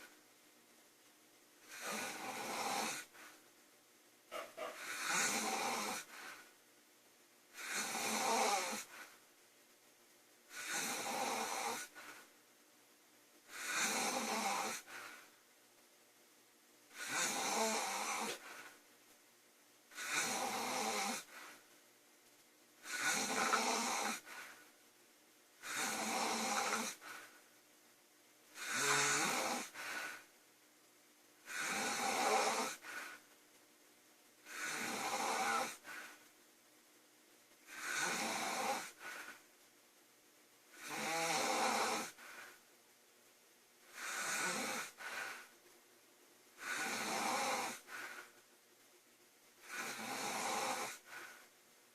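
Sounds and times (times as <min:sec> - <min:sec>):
woman snoring loudly: 0:01.7 - 0:03.1, 0:04.8 - 0:06.4, 0:07.5 - 0:09.1, 0:10.5 - 0:12.2, 0:13.5 - 0:15.2, 0:16.9 - 0:18.7, 0:19.9 - 0:21.5, 0:22.8 - 0:24.5, 0:25.6 - 0:27.3, 0:28.6 - 0:30.2, 0:31.4 - 0:33.1, 0:34.4 - 0:36.1, 0:37.7 - 0:39.3, 0:40.7 - 0:42.2, 0:43.9 - 0:45.4, 0:46.6 - 0:48.2, 0:49.6 - 0:51.2.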